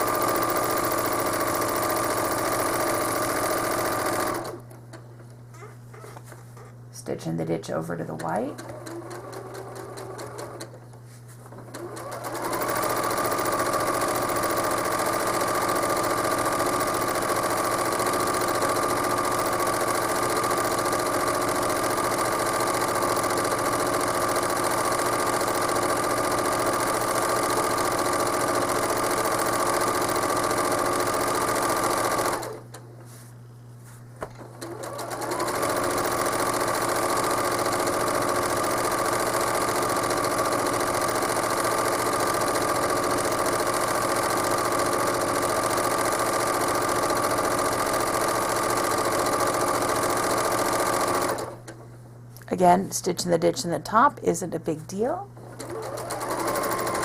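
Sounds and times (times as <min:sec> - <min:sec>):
sewing machine running: 0:00.0 - 0:04.7, 0:08.2 - 0:10.8, 0:11.5 - 0:32.6, 0:34.4 - 0:51.7, 0:55.4 - 0:57.0
low steady hum: 0:04.7 - 0:08.9, 0:51.8 - 0:55.5.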